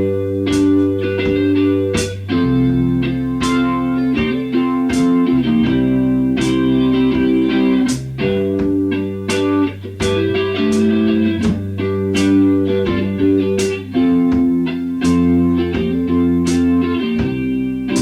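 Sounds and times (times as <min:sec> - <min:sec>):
electric guitar chords: 0:00.0 - 0:18.0.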